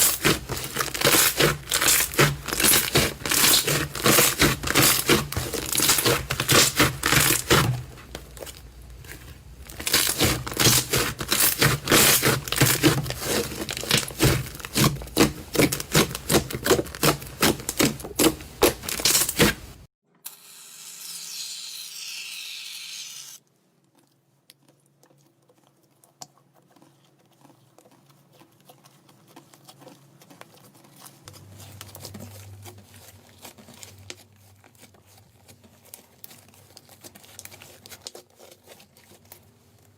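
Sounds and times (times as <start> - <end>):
slime crackling and popping: 0.0 - 7.6, 9.7 - 19.7.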